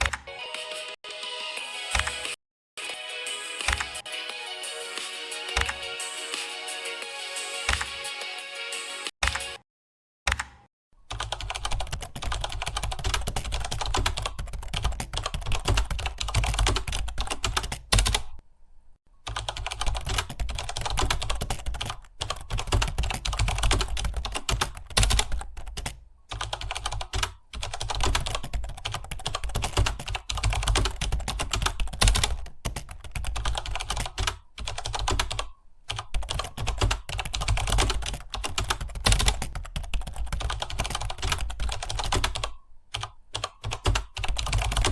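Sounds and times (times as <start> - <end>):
fast typing on keyboard: 5.6 - 6.1, 11.1 - 18.4, 19.3 - 44.9.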